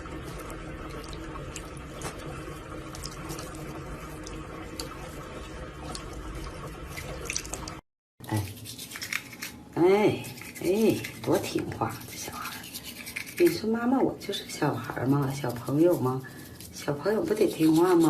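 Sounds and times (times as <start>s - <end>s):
small drips: 0.0s - 9.5s
running water: 0.0s - 18.0s.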